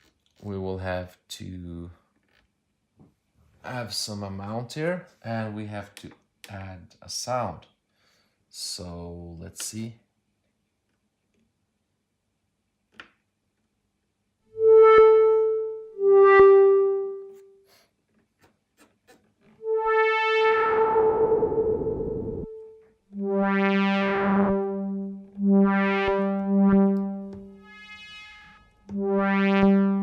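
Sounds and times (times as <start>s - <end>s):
synthesizer pad notes: 14.5s - 17.5s, 19.6s - 30.0s.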